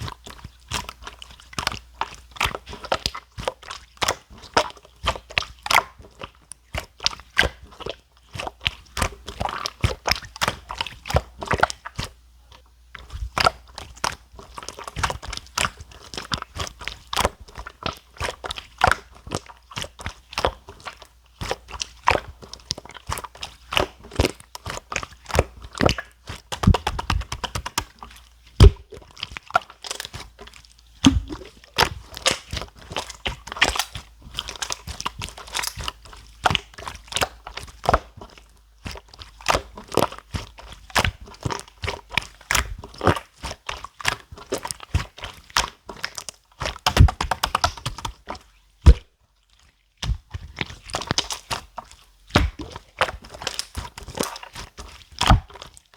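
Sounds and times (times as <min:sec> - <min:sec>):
slime clicking and popping: 0:28.6 - 0:28.9, 0:31.1 - 0:31.6.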